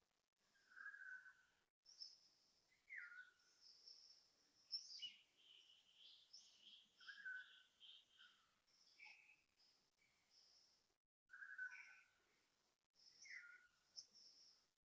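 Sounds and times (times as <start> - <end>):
bird-like whistles and chirps: 0.5 - 9.4, 11.3 - 12.2, 13.0 - 14.5.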